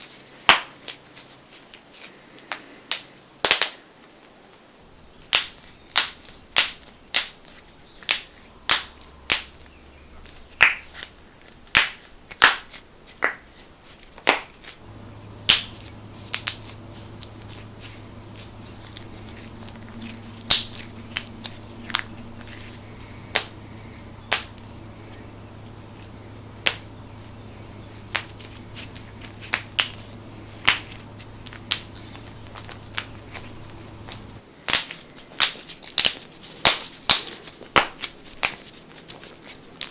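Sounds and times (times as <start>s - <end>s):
low steady hum: 4.7s - 34.6s
knuckles cracking: 5.3s - 25.3s, 26.0s - 39.9s.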